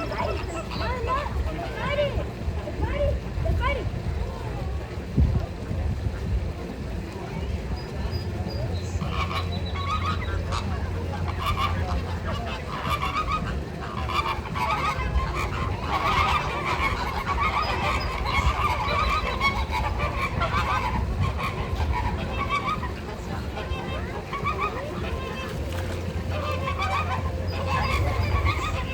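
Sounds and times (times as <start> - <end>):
flamingos honking: 0.0 - 28.9.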